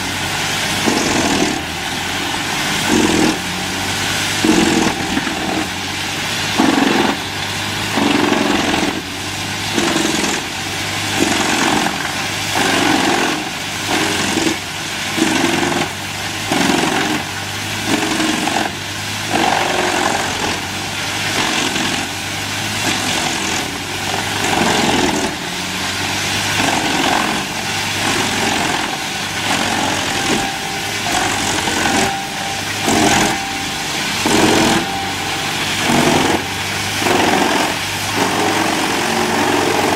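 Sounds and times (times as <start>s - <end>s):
wood chipper running: 0.0s - 39.9s.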